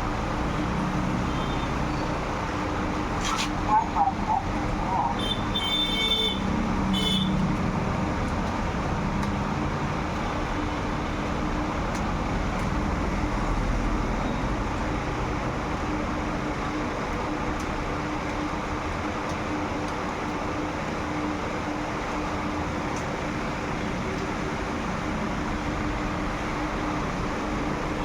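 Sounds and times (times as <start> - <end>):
traffic rumble: 0.0 - 28.0.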